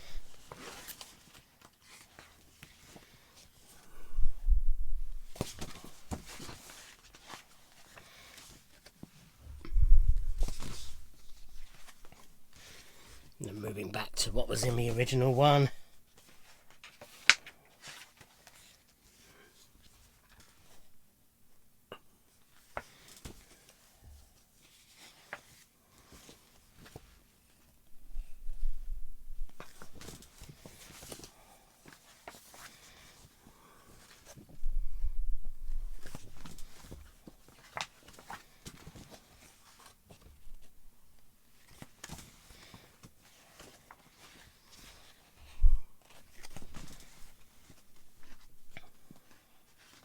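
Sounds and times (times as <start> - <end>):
paper pages rustling: 0.0 - 3.6, 5.1 - 13.4, 16.2 - 19.1, 29.4 - 34.5, 35.6 - 40.7, 41.6 - 45.4, 46.0 - 50.0
pages turning: 8.7 - 12.8, 29.5 - 31.3, 35.7 - 40.3.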